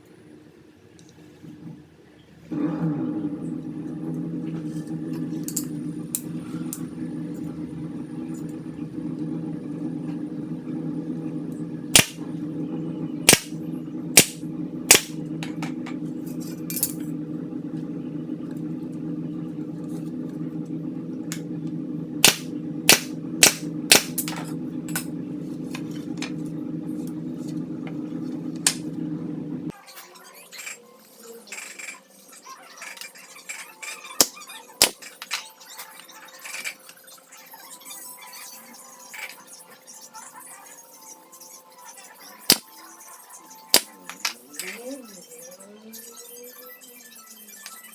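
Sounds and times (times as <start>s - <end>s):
air compressor motor hum: 2.5s - 29.7s
nail gun firing sharp shots: 12.0s - 12.2s, 13.3s - 13.5s, 14.2s - 15.1s, 22.2s - 24.2s.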